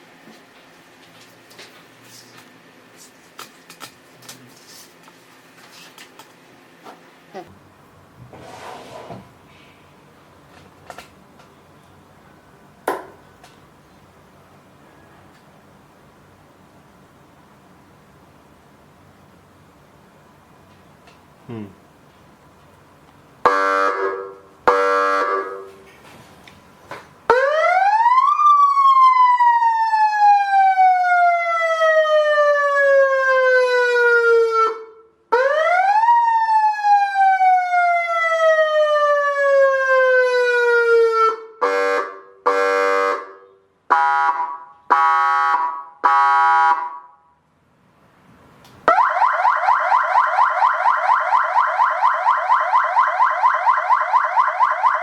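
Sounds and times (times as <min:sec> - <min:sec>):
siren horn blasts: 0:23.4 - 0:25.8, 0:37.0 - 0:47.2
siren fast yelp: 0:27.3 - 0:34.8, 0:48.9 - 0:55.0
siren wailing: 0:27.3 - 0:41.5, 0:48.9 - 0:55.0.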